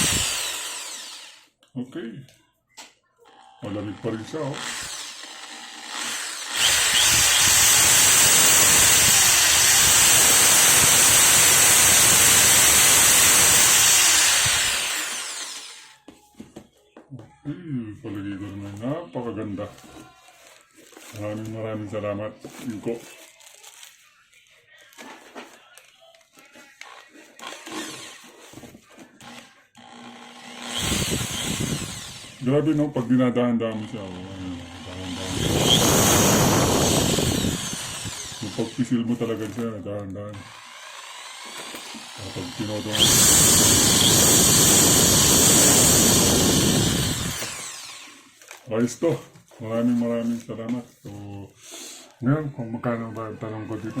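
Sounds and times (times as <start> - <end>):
power tool motor whining: 0.0 - 1.5, 3.3 - 16.0, 26.8 - 28.6, 29.2 - 32.4, 33.8 - 38.9, 40.4 - 48.4.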